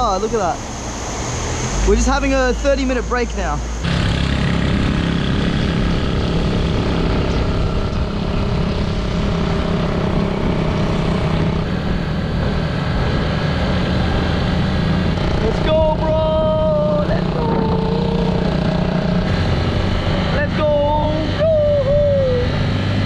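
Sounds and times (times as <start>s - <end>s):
motorcycle engine running: 3.8s - 23.0s.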